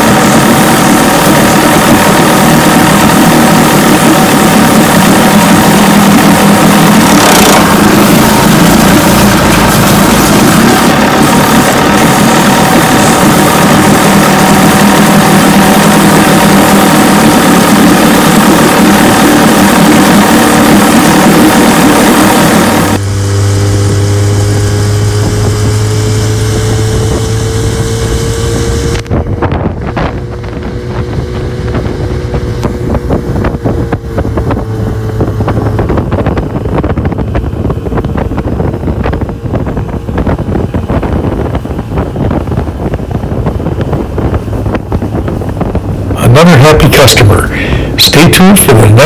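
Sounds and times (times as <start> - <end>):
wind buffeting microphone: 0.0 - 46.3
outboard motor running: 0.0 - 49.0.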